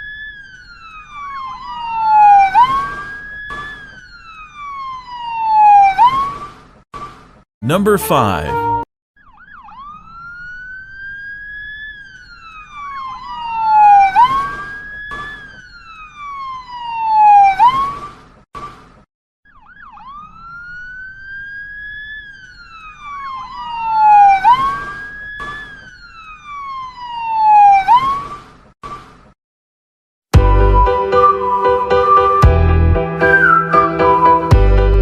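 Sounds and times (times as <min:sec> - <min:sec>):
ambulance siren wailing: 0:00.0 - 0:06.3, 0:09.2 - 0:17.9, 0:19.5 - 0:28.2, 0:30.6 - 0:34.6.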